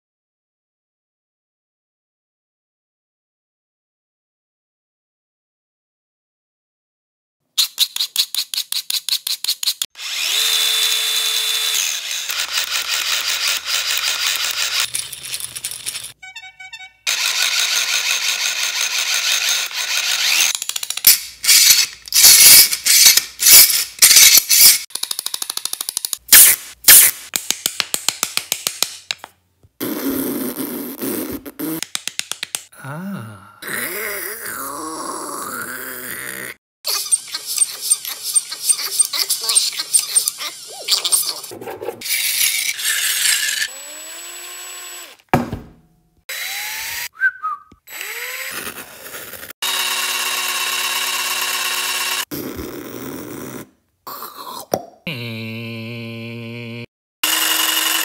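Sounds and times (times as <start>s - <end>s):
power tool motor spinning up: 9.9s - 14.9s, 17.1s - 20.6s, 21.4s - 24.8s, 36.9s - 45.3s, 46.3s - 47.1s, 47.9s - 52.3s, 56.7s - 58.0s
ratchet-like clicks: 12.0s - 16.2s, 17.1s - 27.2s
sharp knock: 45.4s - 45.9s.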